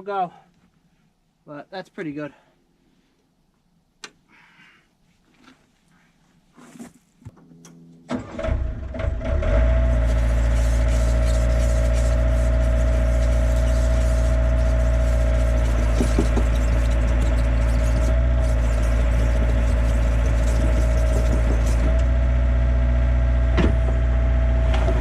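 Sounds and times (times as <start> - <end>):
engine whine: 7.4 - 25.0
diesel engine starting and running: 8.1 - 25.0.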